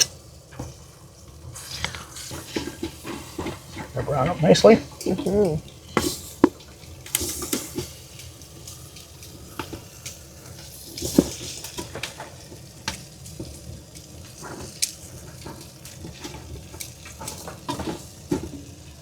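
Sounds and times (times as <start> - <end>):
meat and onions sizzling in pot: 0.0 - 19.0
utensil knocking against pot: 6.4 - 6.6.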